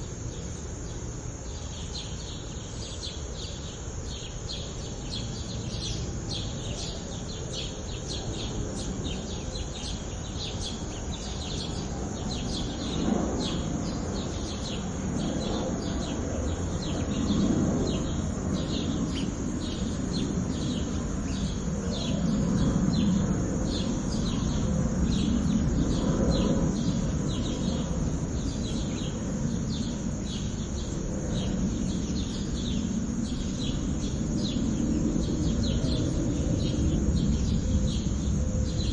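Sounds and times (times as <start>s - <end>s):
plane rumble overhead: 0.0s - 38.9s
sparrows chirping: 0.1s - 38.9s.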